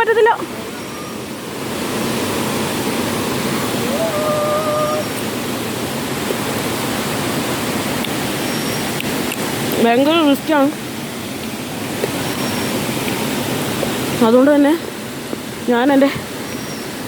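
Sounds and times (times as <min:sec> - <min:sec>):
waterfall rushing: 0:00.0 - 0:17.0
brief held call: 0:03.9 - 0:05.2.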